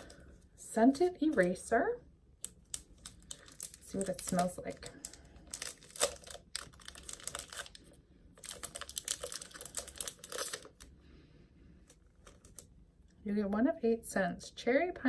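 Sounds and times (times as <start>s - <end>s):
plastic packaging crinkling: 2.4s - 10.9s, 12.2s - 12.7s.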